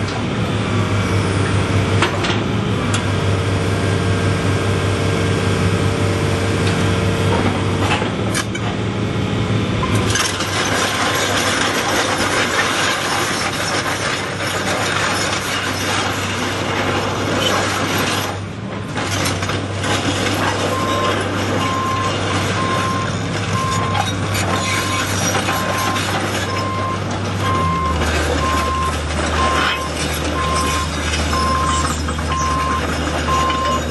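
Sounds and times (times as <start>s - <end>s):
excavator diesel engine humming: 0.0s - 33.9s
travel alarm beeping: 21.7s - 24.0s, 26.6s - 33.8s.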